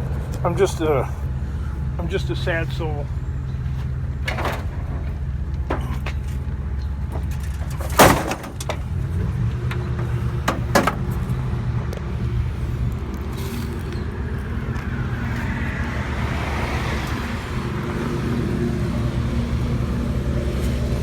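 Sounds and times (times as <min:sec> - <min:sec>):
vehicle engine running: 0:00.0 - 0:21.0.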